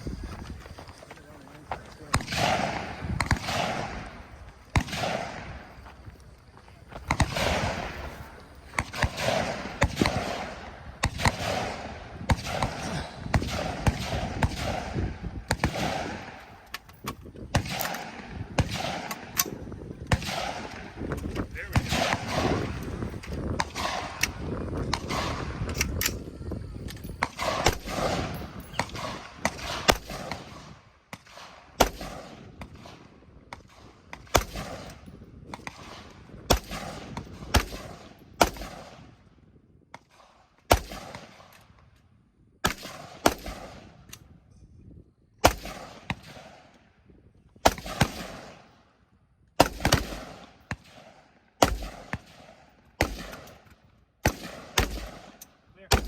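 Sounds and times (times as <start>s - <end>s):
gunshots with echo: 2.1s - 5.7s, 7.1s - 16.5s, 17.5s - 21.0s, 21.6s - 25.6s, 27.2s - 33.0s.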